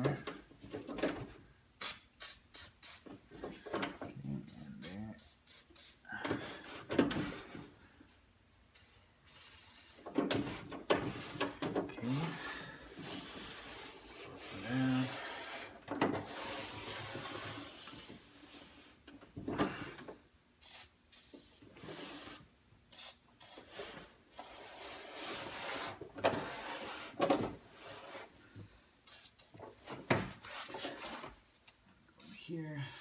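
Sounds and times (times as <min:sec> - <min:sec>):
short spray hiss: 0:01.8 - 0:03.1, 0:05.2 - 0:06.0, 0:08.8 - 0:10.0, 0:29.1 - 0:29.6
rubbing and scraping in mechanism: 0:10.0 - 0:19.6, 0:23.6 - 0:28.5, 0:29.2 - 0:31.5.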